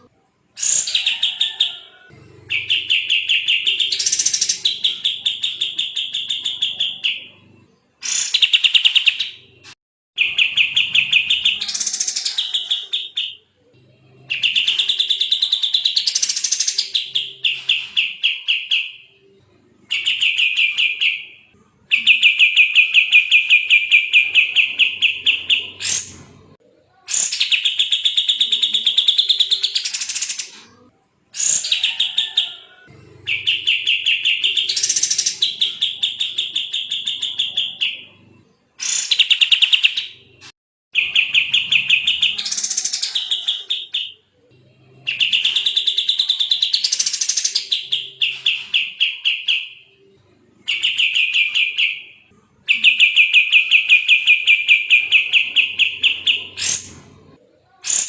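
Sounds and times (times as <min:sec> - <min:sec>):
bird singing fast trills: 0:33.3 - 0:38.2, 0:50.7 - 0:56.9.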